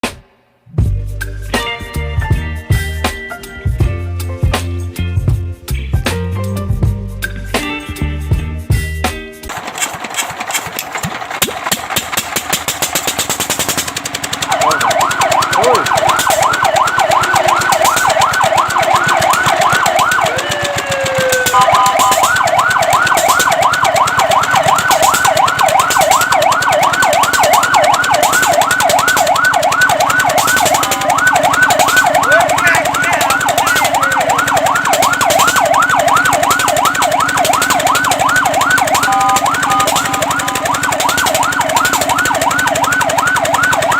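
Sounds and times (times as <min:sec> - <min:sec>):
fire truck siren yelping: 0:09.5 - 0:43.9
rapid mechanical clatter: 0:09.5 - 0:43.9.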